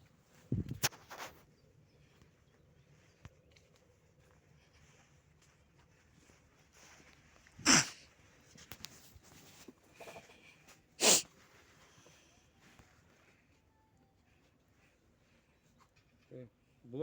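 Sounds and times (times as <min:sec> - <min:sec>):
person sneezing: 0:07.6 - 0:08.0, 0:11.0 - 0:11.3
faint small clatter: 0:08.4 - 0:10.8.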